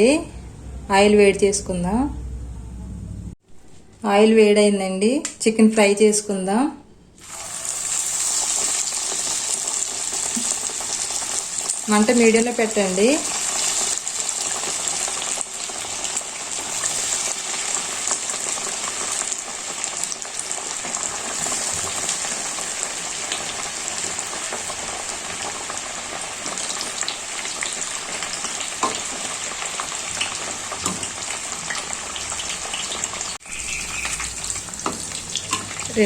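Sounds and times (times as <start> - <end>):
chicken deep-frying in oil: 7.2 - 36.0.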